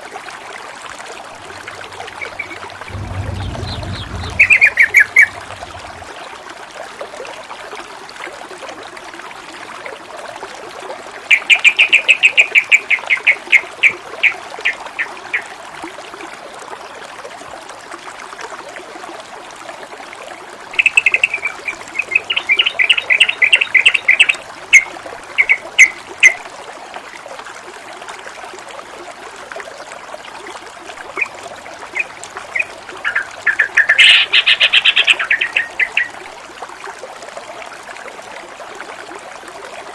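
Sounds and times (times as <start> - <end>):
water trickling: 0.0 - 39.9
songbird chattering: 2.1 - 6.0, 32.5 - 36.1.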